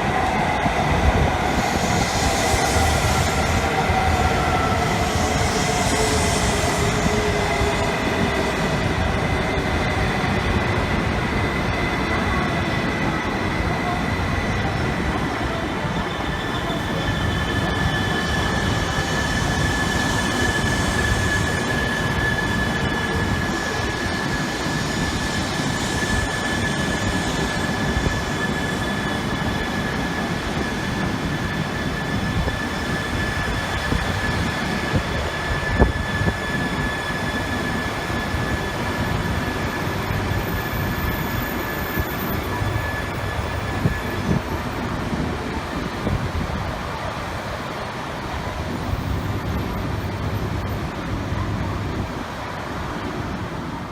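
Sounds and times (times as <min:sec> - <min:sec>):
train rumble: 0:00.0 - 0:53.9.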